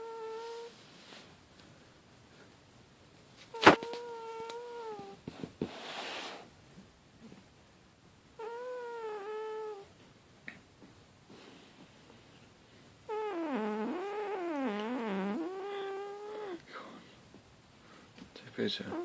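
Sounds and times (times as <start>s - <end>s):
cat snore-purring: 0.0s - 0.7s, 8.4s - 9.9s, 13.1s - 16.6s
breathy hiss: 3.6s - 6.5s.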